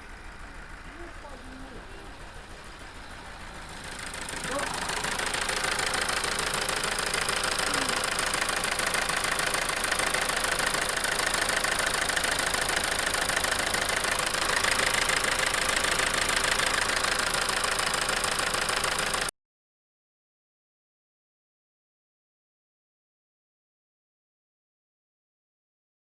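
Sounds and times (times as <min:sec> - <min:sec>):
diesel engine idling clatter: 0:00.0 - 0:19.3.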